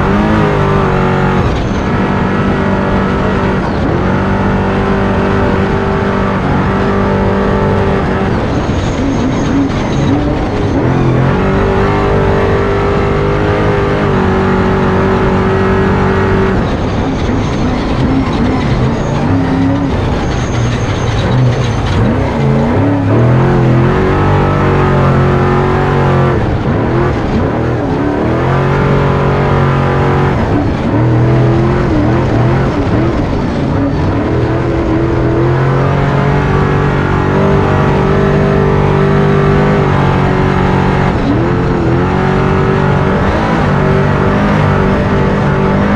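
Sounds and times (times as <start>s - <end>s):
truck engine revving: 0.0s - 45.9s.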